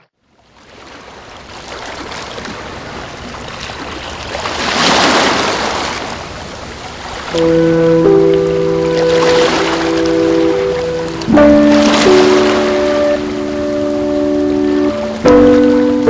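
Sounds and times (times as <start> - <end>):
rushing water: 0.4 - 16.0
music with sustained tones: 7.4 - 16.0.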